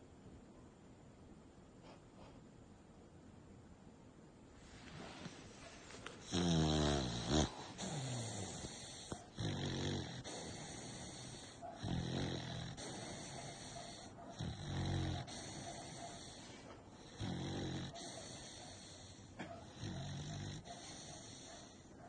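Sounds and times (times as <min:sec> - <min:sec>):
dog snoring loudly: 0:06.2 - 0:21.9.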